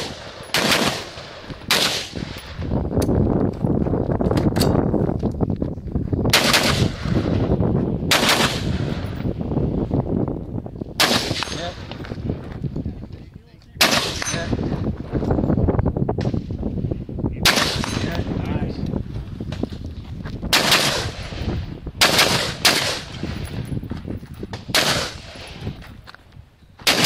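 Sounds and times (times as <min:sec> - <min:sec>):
rifle shots with echo: 0:00.0 - 0:02.6, 0:06.3 - 0:07.5, 0:08.1 - 0:09.2, 0:11.0 - 0:12.0, 0:13.8 - 0:14.6, 0:17.4 - 0:18.4, 0:20.5 - 0:23.6, 0:24.6 - 0:25.6
steady low rumble: 0:00.0 - 0:27.0.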